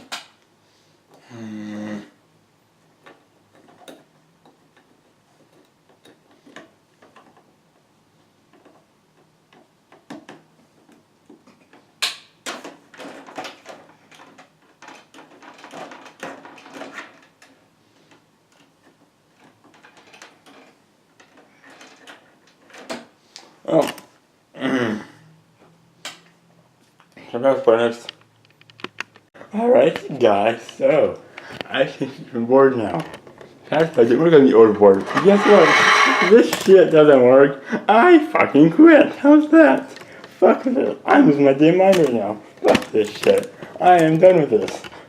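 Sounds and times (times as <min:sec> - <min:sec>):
computer parts clicking and rattling: 0:41.8 - 0:45.0.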